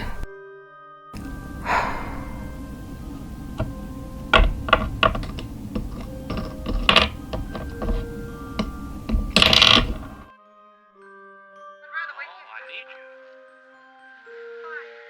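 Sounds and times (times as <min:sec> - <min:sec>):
background hiss: 0:01.2 - 0:10.3
faint held music tones: 0:01.2 - 0:10.3.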